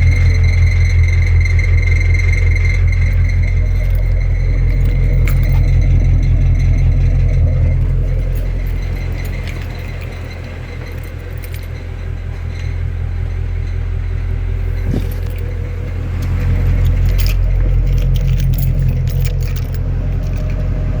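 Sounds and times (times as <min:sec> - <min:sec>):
car engine droning: 0:00.0 - 0:21.0
light metallic rattling: 0:00.0 - 0:21.0.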